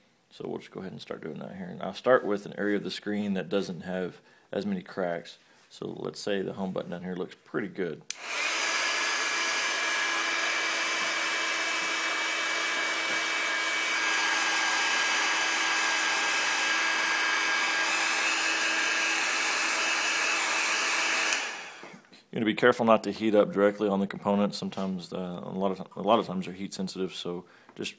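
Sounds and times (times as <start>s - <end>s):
heat tool blowing air: 8.1s - 22.0s.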